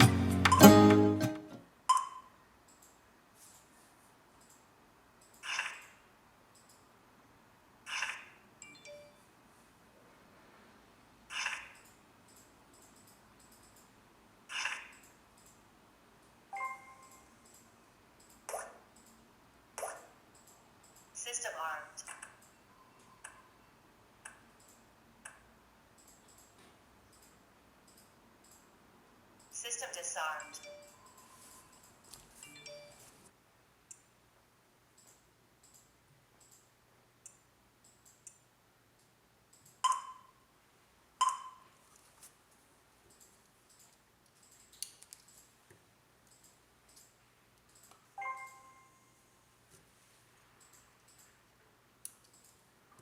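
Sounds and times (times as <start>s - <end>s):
keypad beep: 1.9s - 2.3s, 8.6s - 9.2s, 16.5s - 17.3s, 32.4s - 33.0s, 39.8s - 40.3s, 41.2s - 41.6s, 48.2s - 49.0s
fingers tapping touch keypad: 41.2s - 41.6s
faint clicks and taps: 41.2s - 48.1s.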